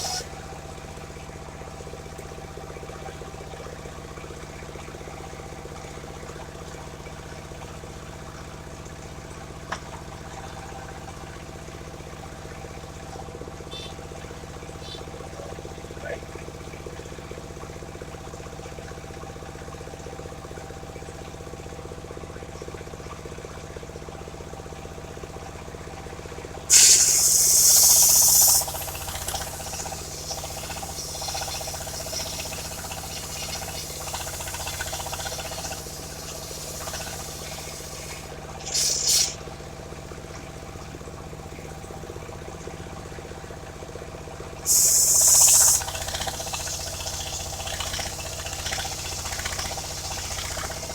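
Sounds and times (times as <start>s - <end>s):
saw blade hissing through wood: 0.0s - 0.3s, 26.7s - 39.5s, 44.7s - 50.9s
sawmill engine running: 0.0s - 0.8s, 26.7s - 39.8s, 44.6s - 50.9s.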